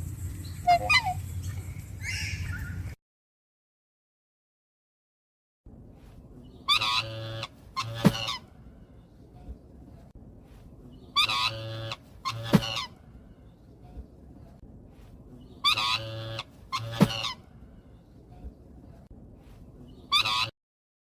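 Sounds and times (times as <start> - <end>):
swan trumpeting honks: 6.7 - 8.6, 11.2 - 13.0, 15.6 - 17.5, 20.1 - 20.5.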